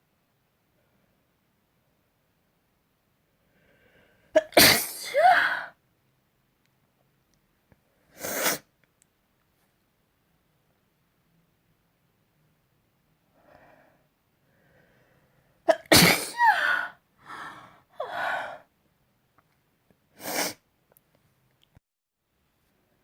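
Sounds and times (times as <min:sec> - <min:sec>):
person sneezing: 0:04.4 - 0:05.8, 0:08.2 - 0:08.7, 0:15.7 - 0:17.0, 0:20.2 - 0:20.6.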